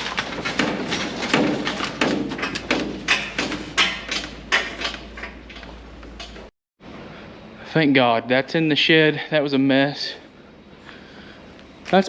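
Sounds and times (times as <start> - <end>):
machinery clunks and thumps: 0.0 - 6.5.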